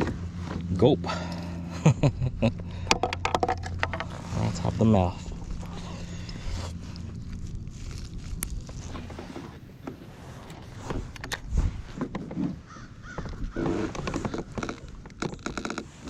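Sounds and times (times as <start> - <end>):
clicks and knocks of gear: 5.4 - 16.0
crow cawing: 12.7 - 13.7.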